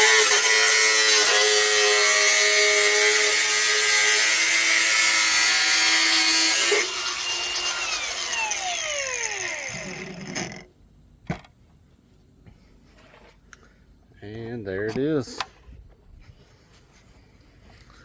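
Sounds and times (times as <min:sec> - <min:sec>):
power cutting tool whine: 0:00.0 - 0:10.7.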